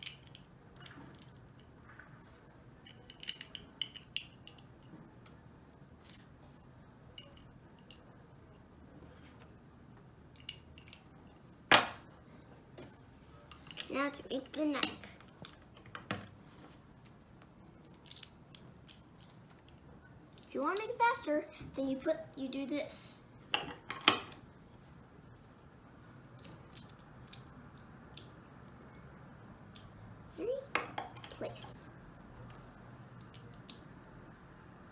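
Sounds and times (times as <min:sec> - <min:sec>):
plastic bricks clicking together: 0:02.9 - 0:04.7
loud sharp clack of bricks: 0:11.7 - 0:12.0.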